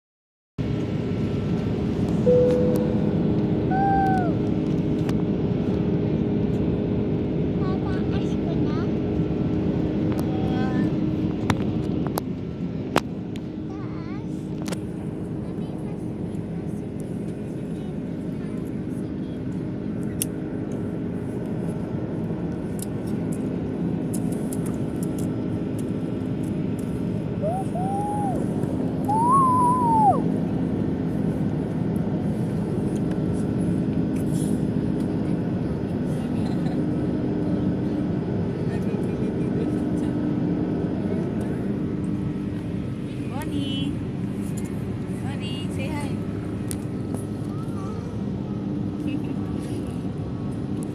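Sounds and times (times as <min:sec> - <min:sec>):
airliner cabin engine noise: 0:00.6 - 0:50.9
airplane droning in flight: 0:00.6 - 0:50.9
brief held tones: 0:02.2 - 0:03.1
short high whine: 0:02.2 - 0:04.3.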